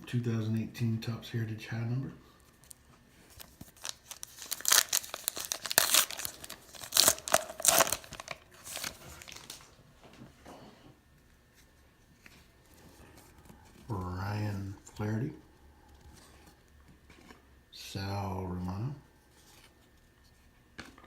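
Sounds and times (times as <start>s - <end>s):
card pack wrapper tearing and crinkling: 2.5s - 9.7s.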